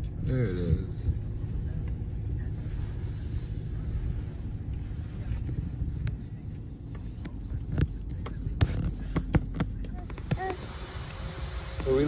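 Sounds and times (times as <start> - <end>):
vehicle rumbling inside cab: 0.0 - 12.0.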